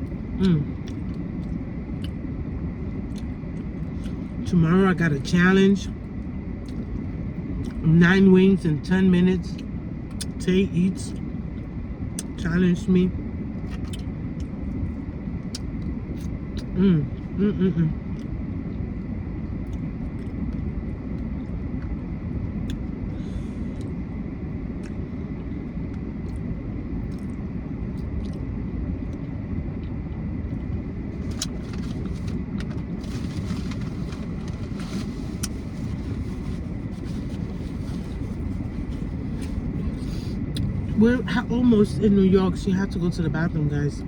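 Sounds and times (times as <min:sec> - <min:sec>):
car cabin rumble: 0:29.9 - 0:44.0.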